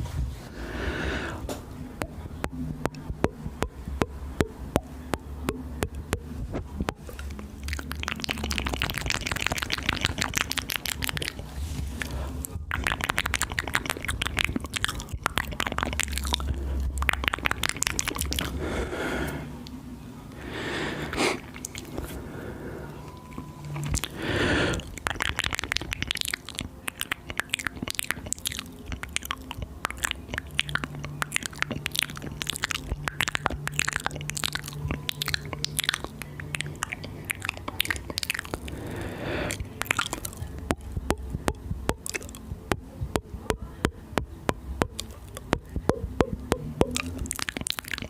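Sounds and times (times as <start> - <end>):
breathy mouth sounds: 0.0 - 48.0
wet tongue and lip clicks: 0.8 - 48.0.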